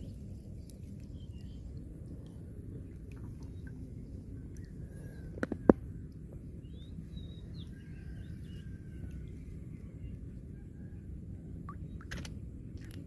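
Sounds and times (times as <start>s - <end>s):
low outdoor background noise: 0.0s - 13.0s.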